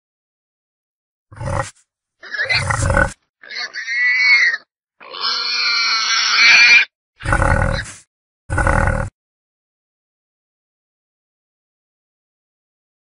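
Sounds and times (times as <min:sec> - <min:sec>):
wild boar grunting and calling: 0:01.3 - 0:09.1.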